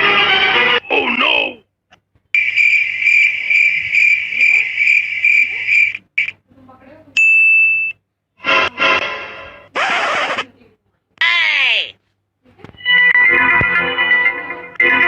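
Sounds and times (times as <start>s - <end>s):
cricket chirping: 2.4s - 6.3s
loud steady beep: 2.4s - 6.3s, 7.2s - 8.0s.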